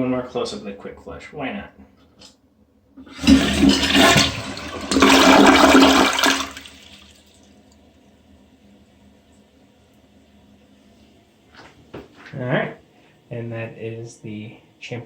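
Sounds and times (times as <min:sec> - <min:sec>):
toilet flushing: 0:03.0 - 0:07.7.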